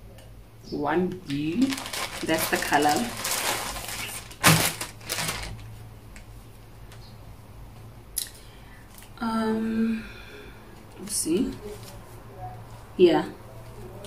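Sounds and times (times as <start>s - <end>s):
packaging rustling: 1.2s - 5.8s.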